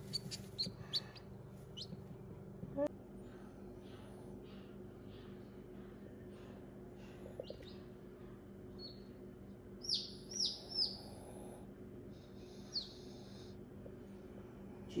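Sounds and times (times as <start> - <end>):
chicks peeping: 0.0 - 2.1, 9.8 - 11.0, 12.7 - 13.0
faint steady hum: 0.0 - 15.0.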